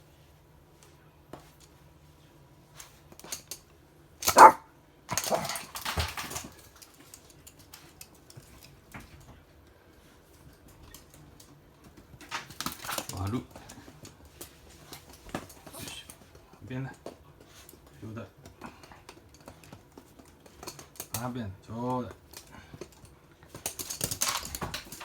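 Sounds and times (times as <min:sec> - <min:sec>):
small dog barking: 0:04.3 - 0:05.5.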